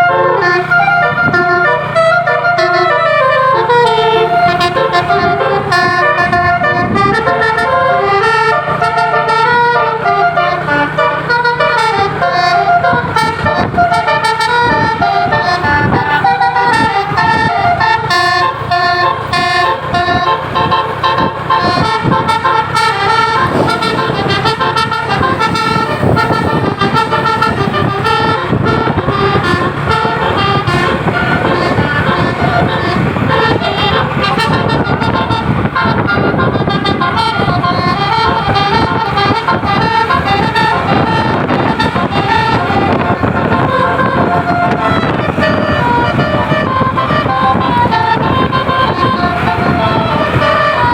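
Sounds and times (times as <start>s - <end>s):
low vehicle rumble: 0.0s - 50.9s
musical bus horn melody: 0.0s - 50.9s.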